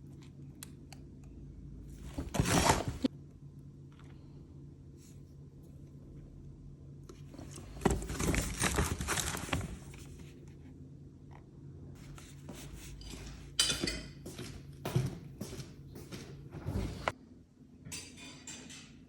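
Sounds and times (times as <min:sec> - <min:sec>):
low steady hum: 0:00.0 - 0:19.0
packaging crinkling and scraping: 0:07.4 - 0:10.2.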